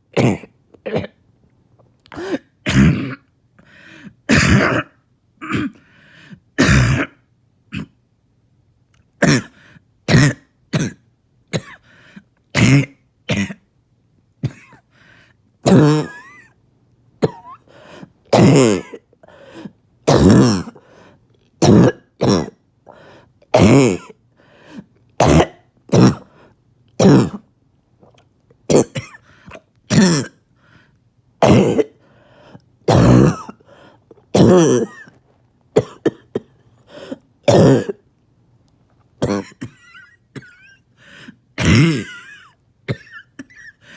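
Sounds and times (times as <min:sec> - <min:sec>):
person coughing harshly: 0:00.2 - 0:01.2, 0:02.2 - 0:03.3, 0:04.3 - 0:05.8, 0:06.6 - 0:08.0, 0:09.2 - 0:11.8, 0:12.6 - 0:13.7, 0:14.4 - 0:14.8, 0:15.6 - 0:16.6, 0:17.2 - 0:17.7, 0:18.3 - 0:19.1, 0:20.1 - 0:20.8, 0:21.6 - 0:22.6, 0:23.5 - 0:24.2, 0:25.2 - 0:26.3, 0:27.0 - 0:27.4, 0:28.7 - 0:30.4, 0:31.4 - 0:32.0, 0:32.9 - 0:35.2, 0:35.8 - 0:38.0, 0:39.2 - 0:40.9, 0:41.6 - 0:43.9
throat clearing: 0:02.1 - 0:03.3, 0:04.3 - 0:05.8, 0:06.6 - 0:08.0, 0:09.2 - 0:11.0, 0:15.6 - 0:16.6, 0:18.3 - 0:19.1, 0:20.1 - 0:20.8, 0:23.5 - 0:24.2, 0:25.2 - 0:26.3, 0:27.0 - 0:27.4, 0:28.7 - 0:30.4, 0:31.4 - 0:32.0, 0:32.9 - 0:33.7, 0:34.3 - 0:38.0, 0:39.2 - 0:40.8, 0:41.6 - 0:43.9.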